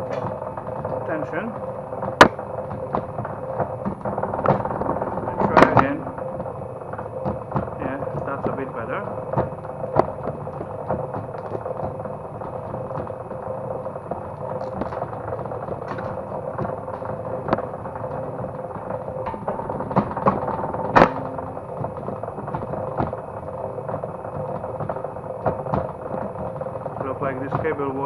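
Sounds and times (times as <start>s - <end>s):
cable stripping machine humming: 0.0s - 28.0s
sharp knock: 19.3s - 21.6s.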